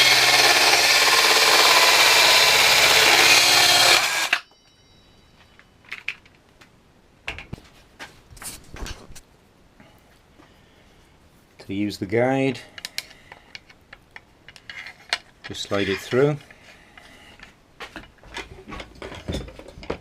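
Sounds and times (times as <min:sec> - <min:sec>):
cordless circular saw cutting: 0:00.0 - 0:04.4.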